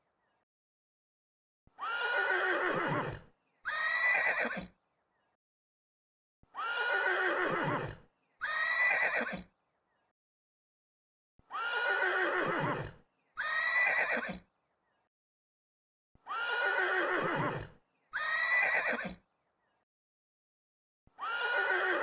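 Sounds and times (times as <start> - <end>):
horse whinnying: 1.8 - 4.7, 6.6 - 9.5, 11.5 - 14.4, 16.3 - 19.2, 21.2 - 22.0.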